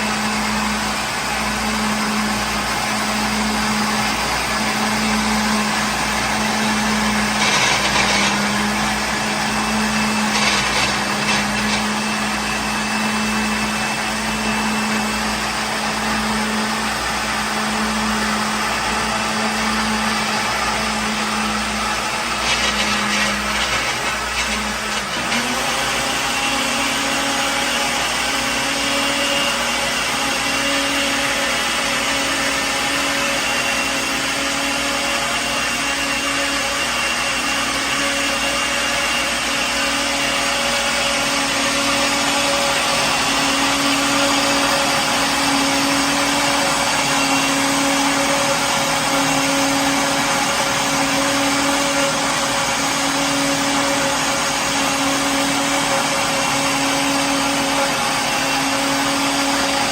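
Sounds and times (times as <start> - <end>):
blender motor whirring: 0.0 - 59.9.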